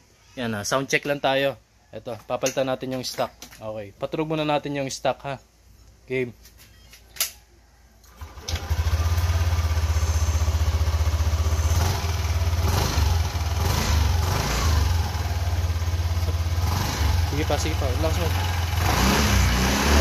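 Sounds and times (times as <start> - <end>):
scooter engine idling: 8.1 - 18.9.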